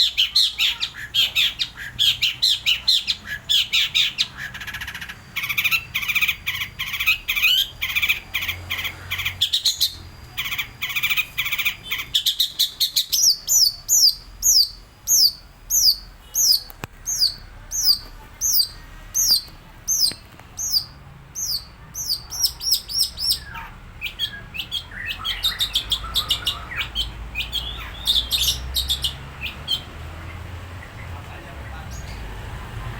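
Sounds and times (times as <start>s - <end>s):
bird chattering trills: 0.0s - 31.2s.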